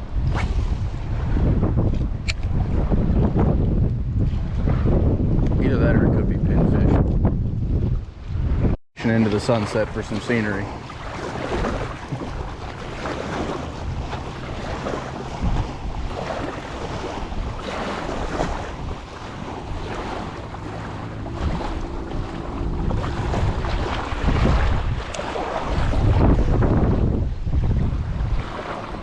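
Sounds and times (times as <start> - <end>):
wind buffeting microphone: 0.0 - 29.0
small waves washing onto sand: 9.0 - 26.9, 27.5 - 29.0.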